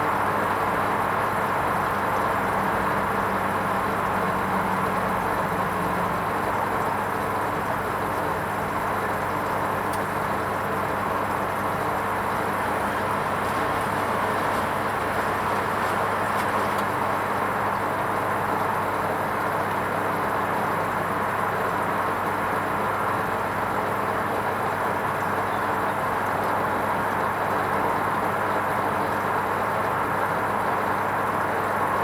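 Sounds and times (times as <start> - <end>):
washing machine running: 0.2 - 31.9.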